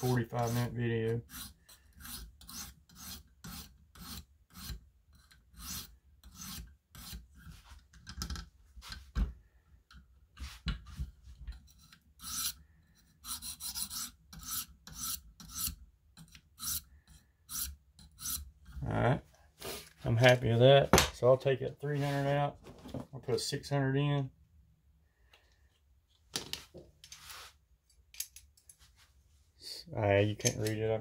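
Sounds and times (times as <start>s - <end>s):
stone rasping on knife blade: 1.2s - 7.5s, 11.7s - 18.5s.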